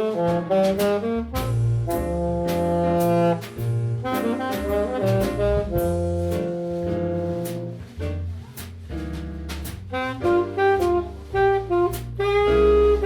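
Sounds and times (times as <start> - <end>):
jazz music with saxophone and brass: 0.0 - 13.0.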